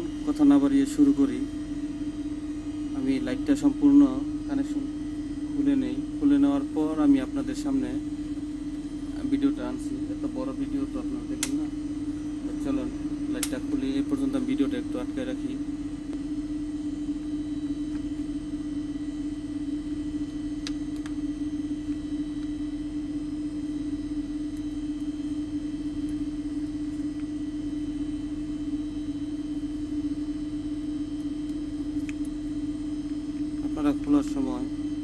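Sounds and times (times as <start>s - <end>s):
steady low hum: 0.0s - 35.0s.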